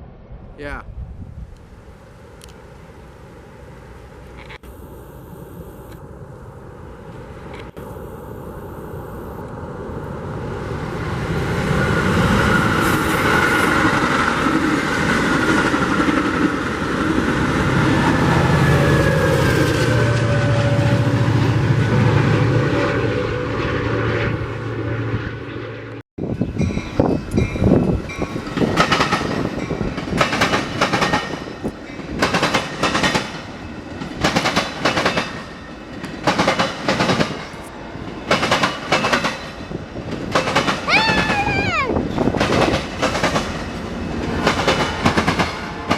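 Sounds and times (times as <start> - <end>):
train rumbling past: 6.0 - 45.9
wheels clacking over rail joints: 26.4 - 41.4, 42.1 - 45.9.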